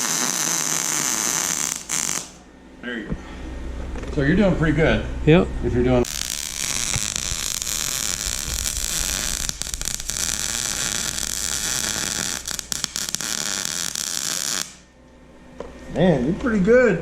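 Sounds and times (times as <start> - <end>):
welder arc crackling hiss: 0.0 - 2.4, 6.0 - 14.9.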